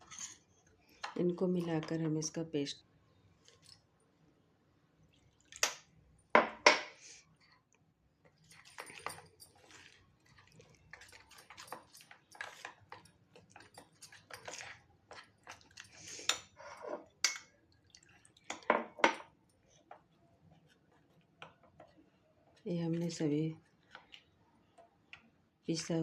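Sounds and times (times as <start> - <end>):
spoon clinking and scraping bowl: 0.0 - 0.4, 8.3 - 17.4.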